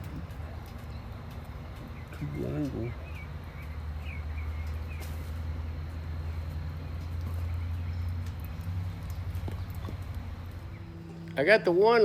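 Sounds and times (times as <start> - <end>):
birds chirping: 0.0 - 12.0
sawmill engine humming: 5.4 - 12.0.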